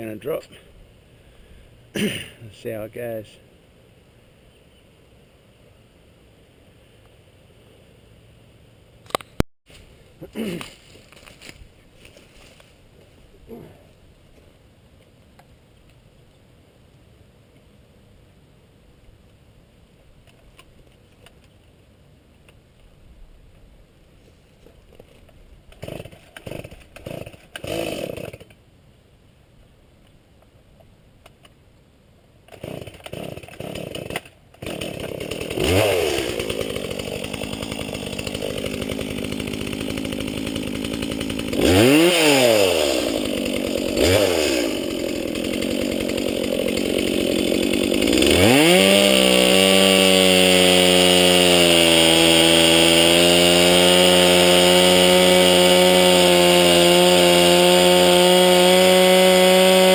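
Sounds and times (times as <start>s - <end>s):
chainsaw sputtering and revving: 25.7s - 28.6s, 32.5s - 59.9s.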